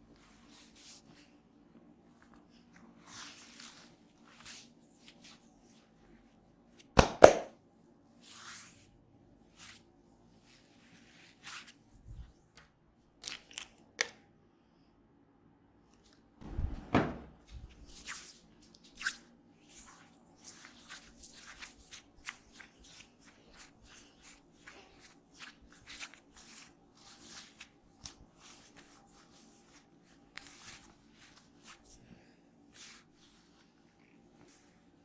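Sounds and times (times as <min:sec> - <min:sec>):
hands rubbing oiled hair: 0:19.8 - 0:34.8.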